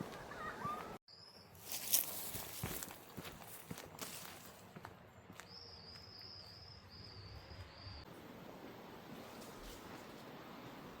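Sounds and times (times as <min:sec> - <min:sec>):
soft footsteps: 0:01.6 - 0:06.1.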